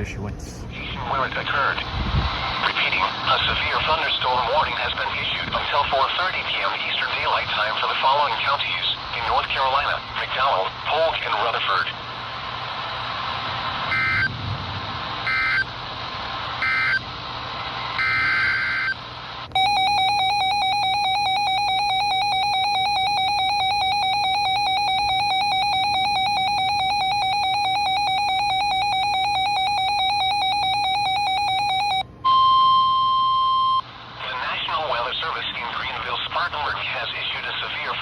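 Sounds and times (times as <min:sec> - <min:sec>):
piercing alert tone: 0:13.9 - 0:14.3, 0:19.5 - 0:32.8
warbling digital data tones: 0:13.9 - 0:14.4, 0:18.0 - 0:32.0.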